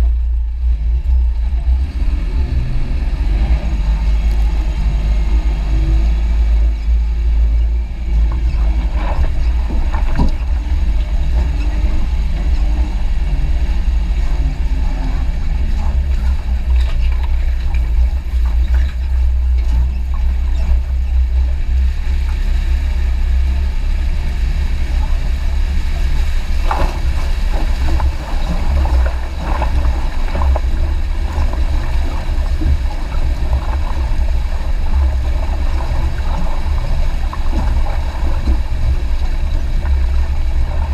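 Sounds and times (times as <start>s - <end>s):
vehicle engine low rumble: 0.0s - 40.9s.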